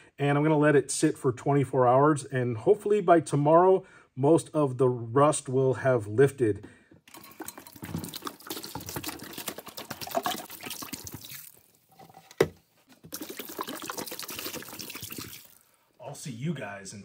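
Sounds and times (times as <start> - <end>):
liquid pouring and splashing: 7.1 - 12.0, 12.9 - 15.8.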